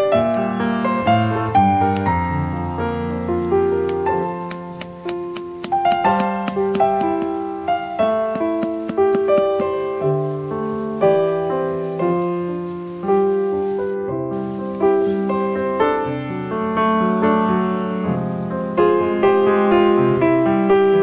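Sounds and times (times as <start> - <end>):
piano music: 0.0 - 21.0.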